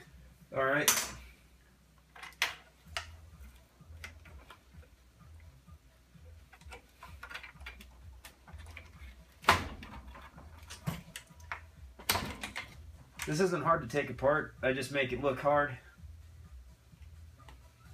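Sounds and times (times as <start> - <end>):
computer parts clicking and tapping: 6.5 - 13.4.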